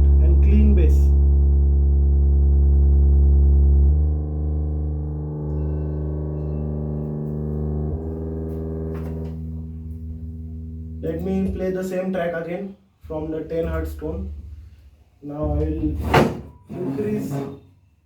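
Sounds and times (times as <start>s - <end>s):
low sine-wave test tone: 0.0s - 11.6s.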